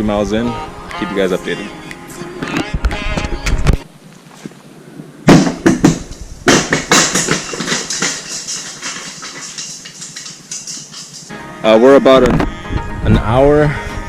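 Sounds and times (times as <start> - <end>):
footsteps crunching on gravel: 4.1 - 4.6.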